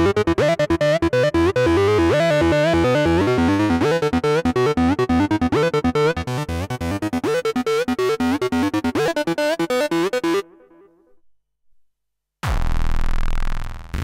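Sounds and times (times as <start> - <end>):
synthesizer bass line: 0.0 - 10.6
synthesizer sequenced notes: 0.0 - 10.8.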